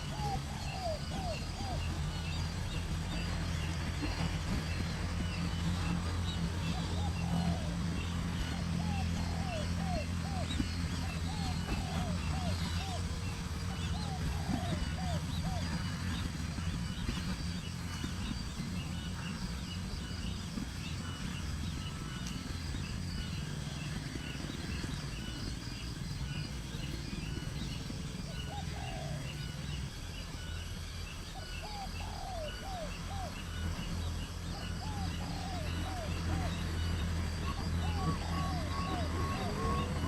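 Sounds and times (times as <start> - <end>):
downward-curving lower bird calls: 0.0 - 17.3, 26.3 - 40.0
steady low rumble: 0.0 - 40.0.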